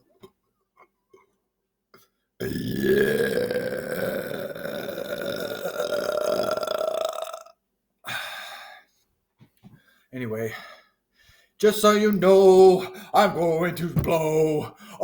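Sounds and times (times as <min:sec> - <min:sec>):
man belching: 0:02.4 - 0:07.6.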